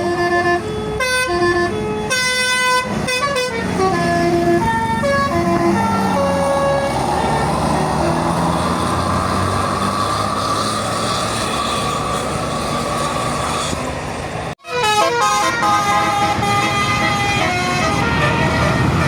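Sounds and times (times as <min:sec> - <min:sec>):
bus horn playing stepped notes: 0:00.0 - 0:06.9, 0:14.6 - 0:19.0
held horn tone: 0:00.0 - 0:08.2
bus engine: 0:00.0 - 0:19.0
traffic noise: 0:00.0 - 0:19.0.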